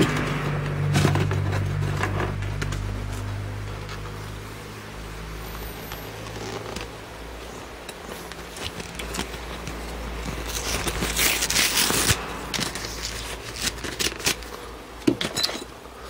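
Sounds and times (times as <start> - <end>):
packaging rustling and scraping: 0.0 - 4.4, 5.8 - 15.8.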